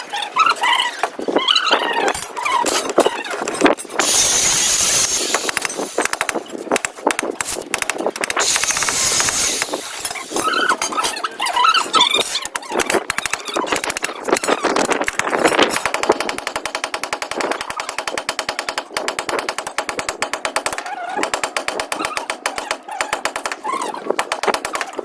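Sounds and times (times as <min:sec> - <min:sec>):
pet birds squeaky calls: 0:00.0 - 0:06.6, 0:08.4 - 0:14.9, 0:22.9 - 0:24.1
harsh rushing noise: 0:04.0 - 0:06.5.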